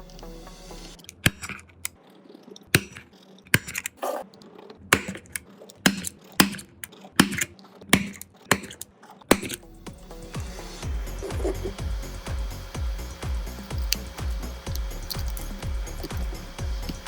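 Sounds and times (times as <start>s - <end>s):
tools clicking against phone: 1.0s - 2.0s, 2.7s - 4.0s
tools scraping: 1.0s - 9.7s, 10.4s - 11.9s, 13.5s - 17.0s.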